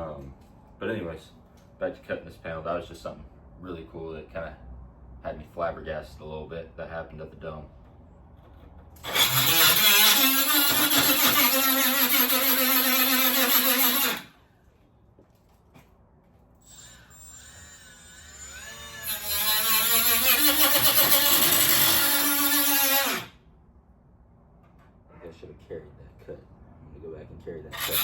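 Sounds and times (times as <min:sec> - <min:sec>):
power cutting tool whine: 0:09.0 - 0:14.3, 0:16.6 - 0:23.3, 0:27.7 - 0:28.0.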